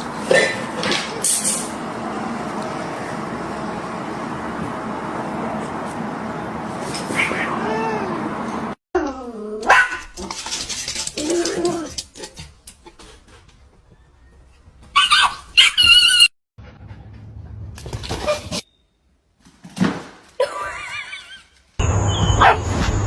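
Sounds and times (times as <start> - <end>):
dog barking and yipping: 9.6 - 10.2, 14.9 - 16.3, 22.4 - 22.7
dog squealing: 15.0 - 16.3.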